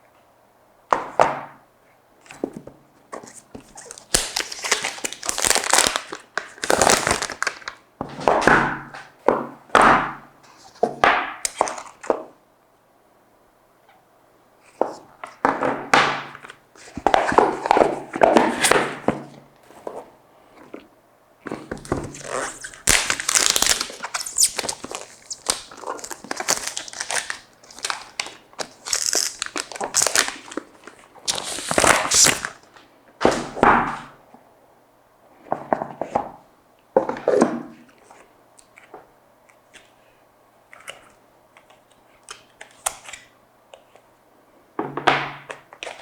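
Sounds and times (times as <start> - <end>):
plastic wrapping tearing: 3.7 - 7.8, 22.1 - 32.6.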